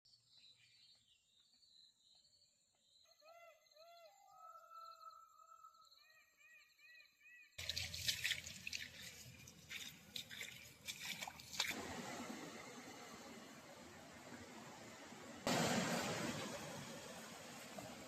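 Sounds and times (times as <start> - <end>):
faint insects: 0.1 - 11.8
water trickling and dripping: 7.6 - 11.9.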